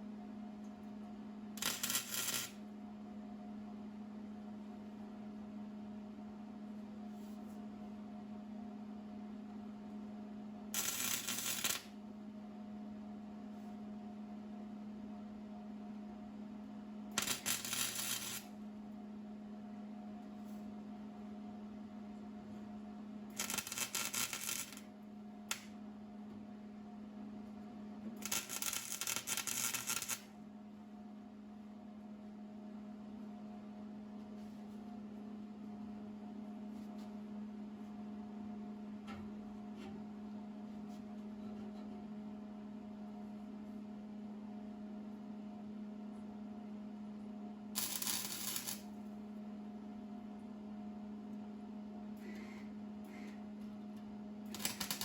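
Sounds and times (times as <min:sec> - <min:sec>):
welding crackle: 0:01.6 - 0:02.6, 0:10.8 - 0:11.9, 0:17.2 - 0:18.5, 0:23.4 - 0:24.9, 0:28.2 - 0:30.3, 0:47.8 - 0:48.9, 0:54.5 - 0:55.0.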